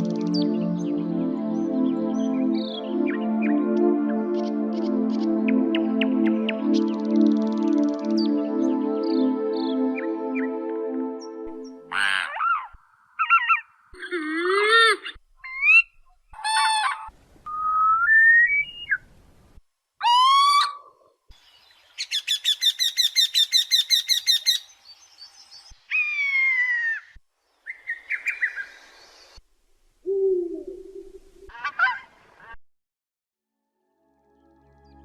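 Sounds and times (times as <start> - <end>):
bird trill: 22.0 - 24.8.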